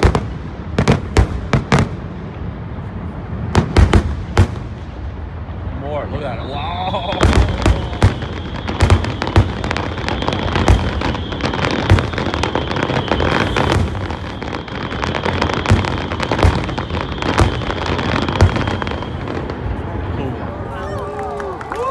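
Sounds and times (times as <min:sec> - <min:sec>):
firework bangs: 0:00.0 - 0:20.2
firework crackling: 0:00.0 - 0:21.9
steady high whistle: 0:06.2 - 0:19.5.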